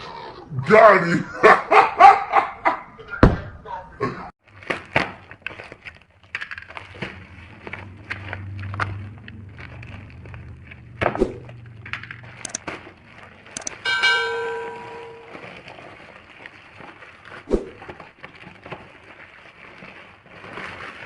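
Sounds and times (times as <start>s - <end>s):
small clicks: 11.9s - 12.6s
metal part clanging: 13.6s - 15.3s
low hum: 13.6s - 15.6s
packaging being handled: 15.4s - 21.0s.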